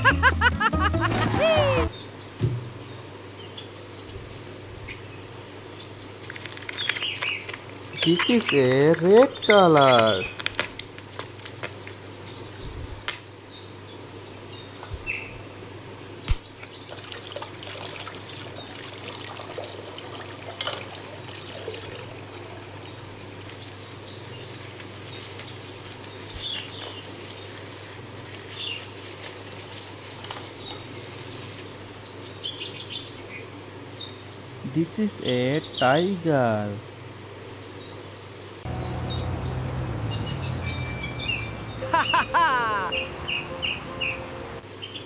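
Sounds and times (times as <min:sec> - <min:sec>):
birds chirping: 0:00.0 - 0:45.0
sharp click: 0:16.3 - 0:16.5
water pouring and trickling: 0:16.8 - 0:23.0.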